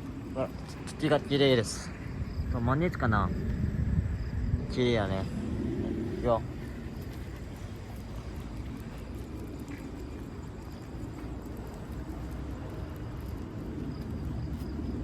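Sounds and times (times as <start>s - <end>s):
low rumbling outdoor noise: 0.0s - 15.0s
faint ticks: 6.6s - 15.0s.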